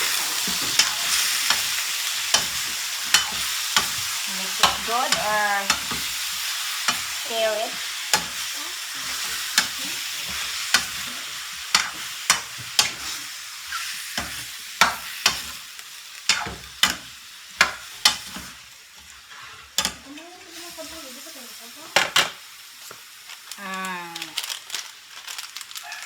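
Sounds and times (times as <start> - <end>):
chicken sizzling in hot oil: 0.0 - 26.0
utensil clacking against pan: 0.4 - 7.2, 8.1 - 8.4, 9.0 - 13.2, 14.1 - 15.6, 16.3 - 18.6, 19.8 - 20.1.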